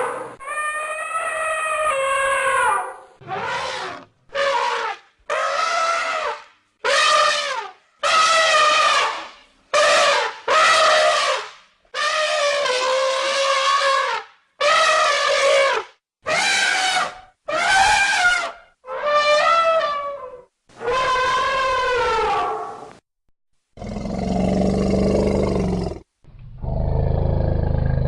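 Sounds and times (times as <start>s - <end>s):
elephant trumpeting: 0.0s - 9.2s, 12.0s - 22.7s.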